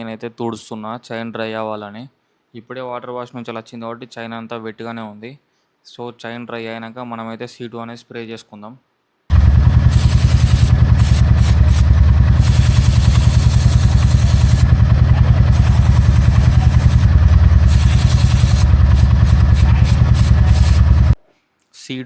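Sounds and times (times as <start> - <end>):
motorcycle engine running: 9.3 - 21.2.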